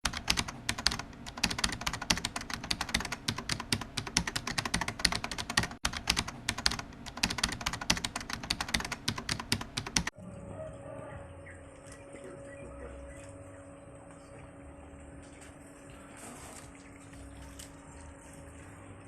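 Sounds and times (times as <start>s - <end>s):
sharp rapid clicks: 0.0s - 10.1s
faint steady hum: 0.1s - 19.0s.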